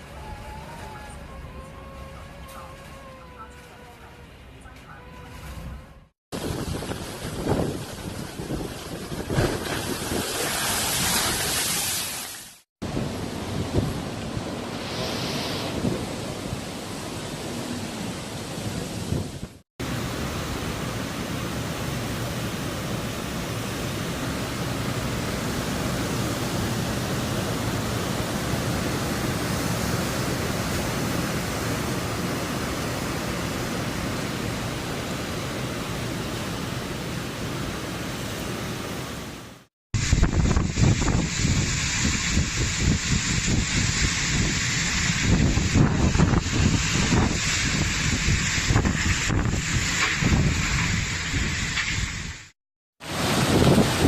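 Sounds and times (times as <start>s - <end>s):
wind and rain: 0.0s - 54.0s.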